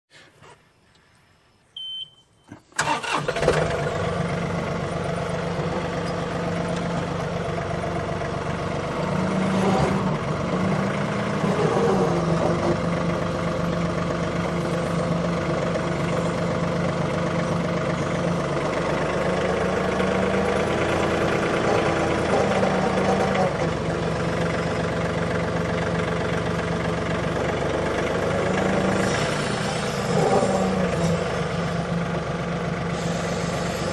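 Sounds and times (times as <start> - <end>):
short high beep: 1.4 - 2.6
vehicle engine starting and running: 2.5 - 33.9.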